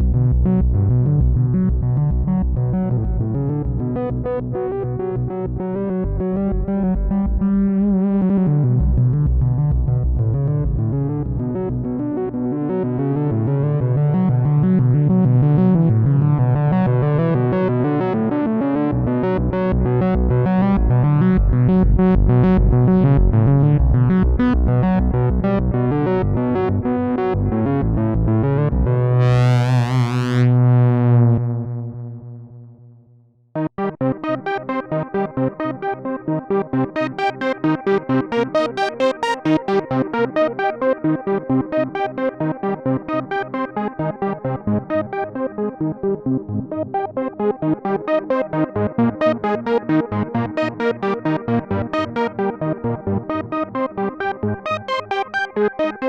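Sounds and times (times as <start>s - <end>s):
synthesizer sequenced pattern: 33.6s - 56.0s.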